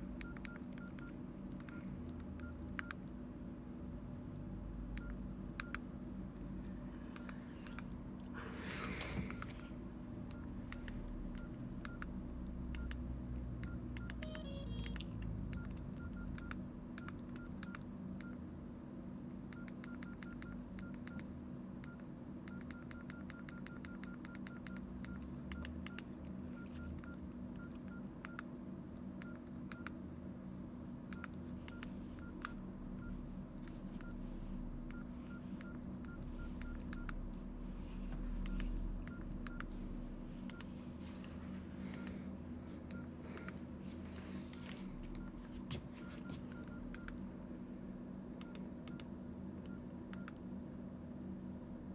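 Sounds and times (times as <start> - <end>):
phone keypad beeps: 0.2 - 3.0, 4.9 - 5.8, 10.3 - 12.1, 13.6 - 18.4, 21.8 - 28.4, 31.1 - 33.2, 34.9 - 37.2, 40.4 - 40.7, 44.5 - 47.2
low hum: 29.2 - 51.9.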